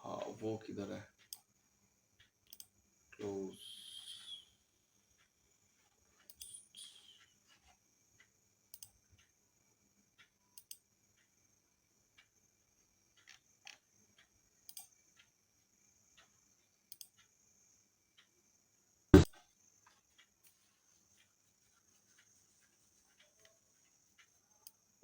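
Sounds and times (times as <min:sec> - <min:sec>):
computer mouse clicks: 0:02.5 - 0:02.7, 0:06.3 - 0:07.3, 0:08.7 - 0:08.9, 0:10.6 - 0:10.8, 0:14.7 - 0:14.9, 0:16.9 - 0:17.2.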